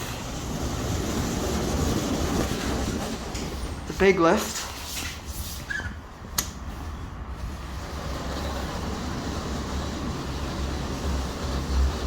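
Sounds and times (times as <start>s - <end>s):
lift rumble: 0.0s - 12.0s.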